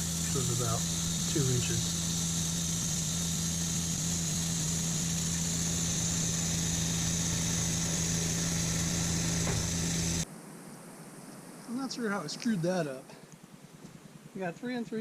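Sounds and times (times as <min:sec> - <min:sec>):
sawmill engine humming: 0:00.0 - 0:10.2.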